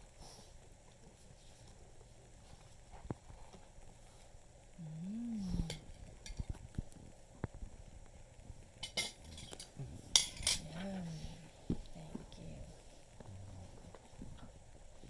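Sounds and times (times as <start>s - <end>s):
person humming: 4.8s - 5.9s, 9.8s - 11.5s
cutlery clinking against plates: 8.8s - 10.7s.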